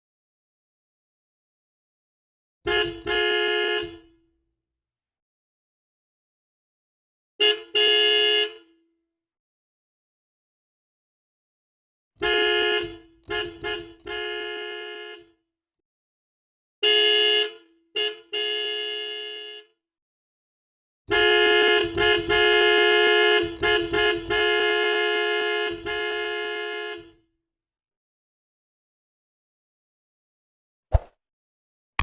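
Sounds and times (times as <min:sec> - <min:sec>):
two-note car horn honking: 0:02.7 - 0:04.2, 0:07.4 - 0:08.8, 0:12.2 - 0:15.4, 0:16.8 - 0:19.8, 0:21.1 - 0:27.2.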